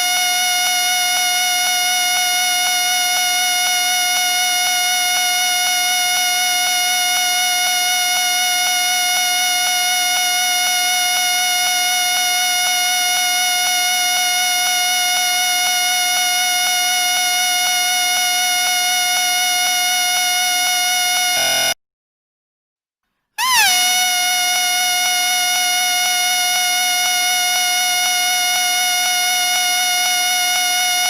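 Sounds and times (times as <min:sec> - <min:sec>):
whistle long warbling note: 0:21.0 - 0:21.8, 0:23.4 - 0:31.0.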